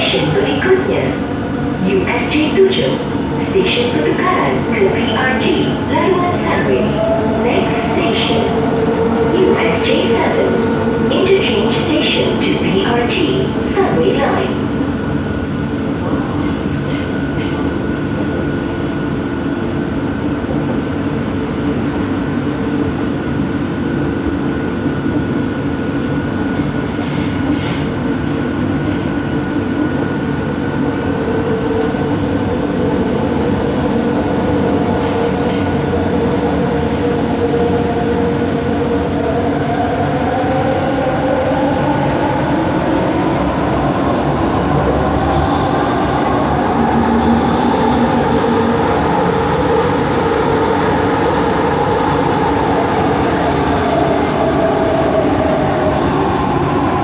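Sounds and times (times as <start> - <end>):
metro train rumbling: 0.0 - 57.0.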